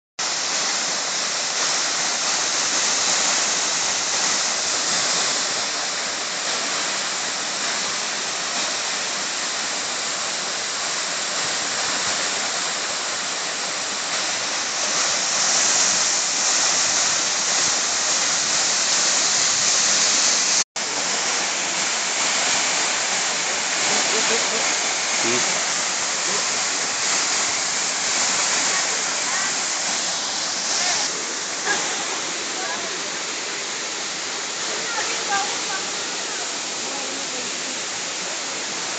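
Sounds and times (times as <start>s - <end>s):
waterfall rushing: 0.2s - 38.9s.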